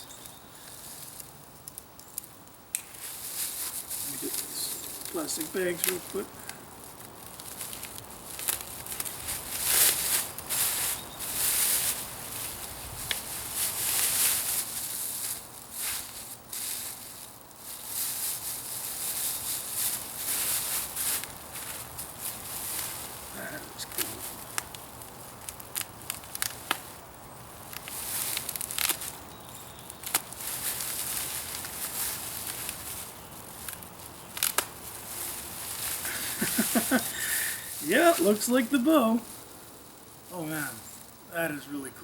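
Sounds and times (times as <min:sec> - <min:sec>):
plastic wrapping crinkling: 0:00.0 - 0:41.2
plastic bags rustling: 0:02.8 - 0:40.8
sharp plastic snaps: 0:33.6 - 0:34.8.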